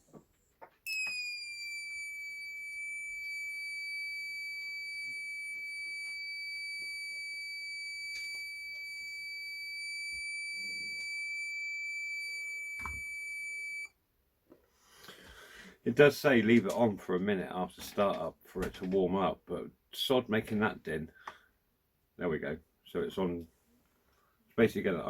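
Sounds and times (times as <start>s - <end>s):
high-pitched alarm buzzer: 0.9s - 13.9s.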